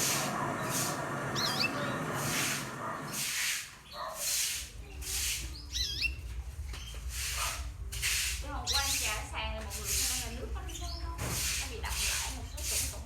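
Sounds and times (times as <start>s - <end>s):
canaries chirping: 0.0s - 13.0s.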